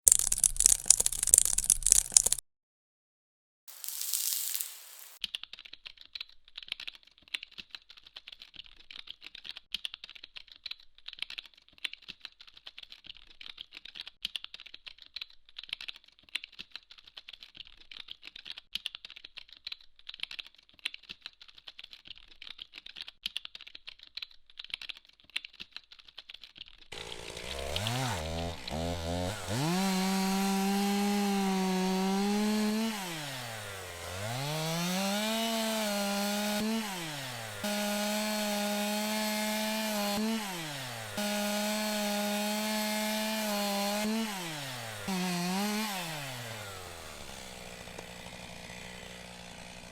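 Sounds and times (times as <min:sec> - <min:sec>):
electric saw motor whining: 0:27.0 - 0:49.9.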